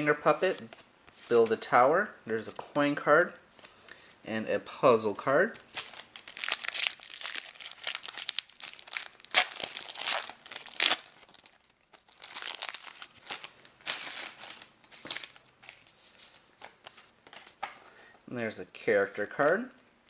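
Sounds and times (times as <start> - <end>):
wrapper being torn and crinkled: 5.7 - 16.0.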